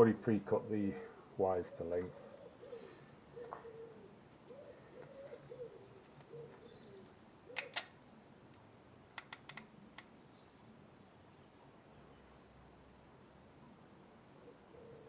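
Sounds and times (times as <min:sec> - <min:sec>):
pigeon cooing: 0:00.5 - 0:07.9, 0:14.4 - 0:15.0
crimping tool clicks: 0:07.6 - 0:07.9, 0:09.2 - 0:10.1.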